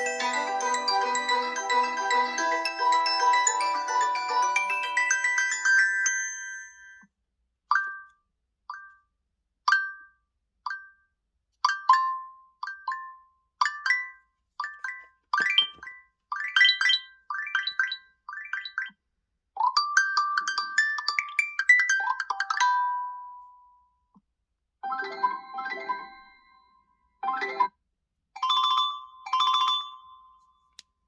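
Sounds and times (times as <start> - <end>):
bell-like ringtone pings: 0.0 - 7.0
mallet-like ringtone tune: 0.0 - 7.0, 24.8 - 27.7.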